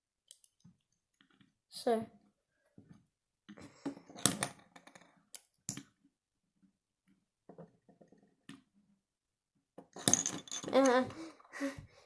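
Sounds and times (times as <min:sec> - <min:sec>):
plastic bricks clicking together: 0:09.9 - 0:11.1.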